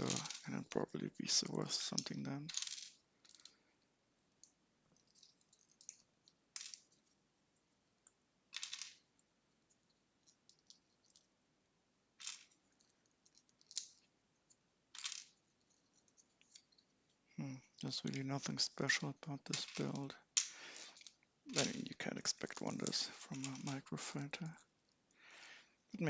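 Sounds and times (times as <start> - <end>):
plastic toy bricks clattering: 0.0 - 0.4, 1.8 - 3.6, 5.0 - 7.0, 8.5 - 9.1, 12.2 - 14.1, 14.9 - 16.8, 19.5 - 23.8.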